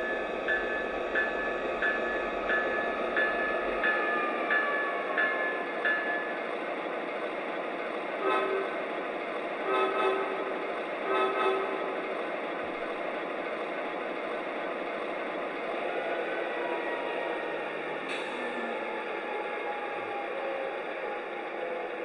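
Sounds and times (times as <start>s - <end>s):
model train rumbling on track: 0.0s - 22.0s
locomotive horn toots: 8.2s - 8.8s, 9.6s - 11.9s.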